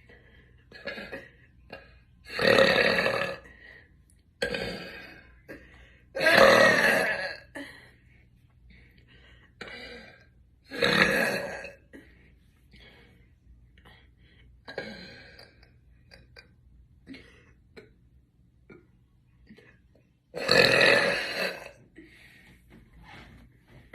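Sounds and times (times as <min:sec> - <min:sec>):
woman burping loudly: 0:00.7 - 0:03.5, 0:04.4 - 0:05.5, 0:06.2 - 0:07.6, 0:09.7 - 0:12.0, 0:14.7 - 0:16.5, 0:20.3 - 0:21.8.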